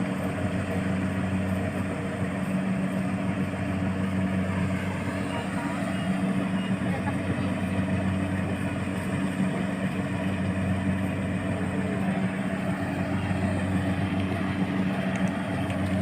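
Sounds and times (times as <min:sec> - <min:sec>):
harvesting machine engine running: 0:00.0 - 0:16.0.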